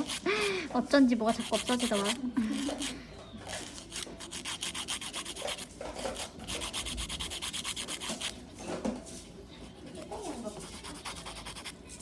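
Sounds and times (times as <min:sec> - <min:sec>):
fingernail being filed: 0:00.0 - 0:00.5, 0:01.3 - 0:08.4, 0:10.5 - 0:12.0.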